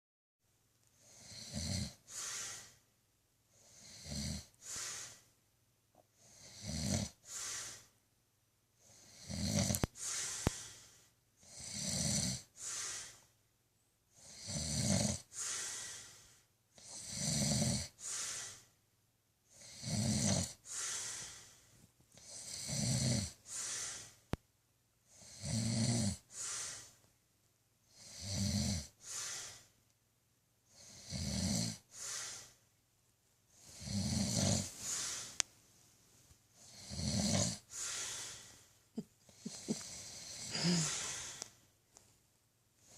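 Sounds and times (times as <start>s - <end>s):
man snoring loudly: 1.1s - 2.7s, 3.6s - 5.2s, 6.2s - 7.8s, 8.8s - 10.7s, 11.4s - 13.2s, 14.2s - 16.1s, 16.8s - 18.6s, 19.5s - 21.4s, 22.2s - 24.1s, 25.1s - 26.9s, 27.9s - 29.6s, 30.7s - 32.5s, 33.6s - 35.3s, 36.6s - 38.4s, 39.3s - 41.4s.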